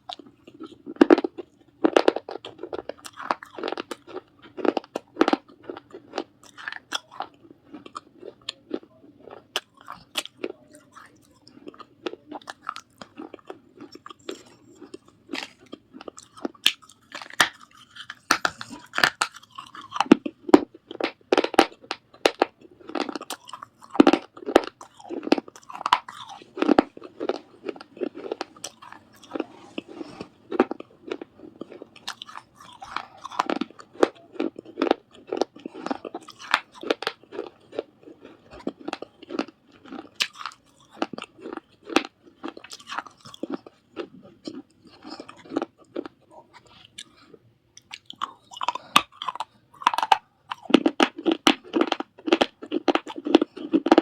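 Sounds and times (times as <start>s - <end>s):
biting and chewing clay pot: 0.0s - 54.0s.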